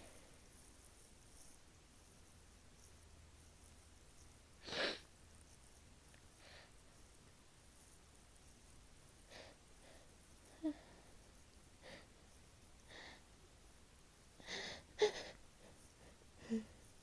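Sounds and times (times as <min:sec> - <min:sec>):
person breathing and sniffing: 0:04.6 - 0:05.0.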